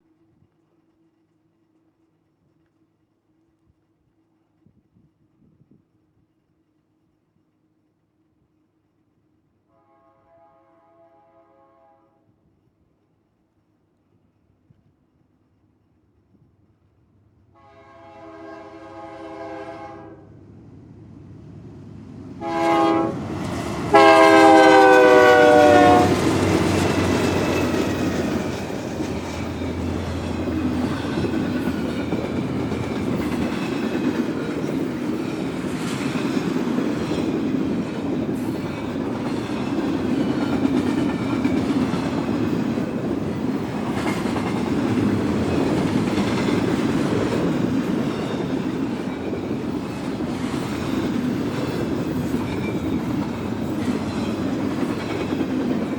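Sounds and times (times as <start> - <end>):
locomotive horn blasts: 9.7 - 12.2, 17.6 - 20.3, 22.4 - 26.7
freight train rumble: 17.4 - 55.9
wheels clattering on rails: 26.0 - 55.9.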